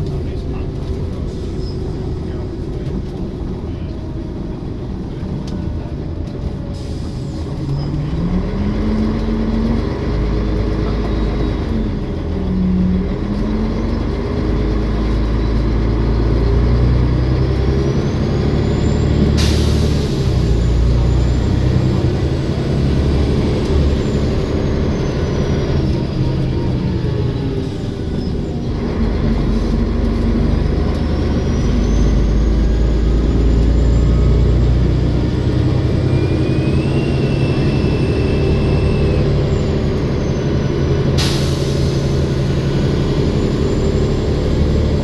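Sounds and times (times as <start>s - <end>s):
bus engine accelerating: 0.0s - 45.0s
air brakes hissing: 6.7s - 8.0s, 18.0s - 26.7s, 35.4s - 45.0s.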